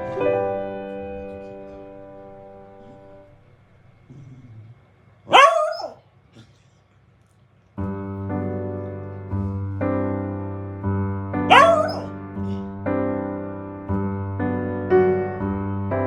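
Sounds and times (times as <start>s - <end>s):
dog barking: 5.3s - 6.0s, 11.5s - 12.1s.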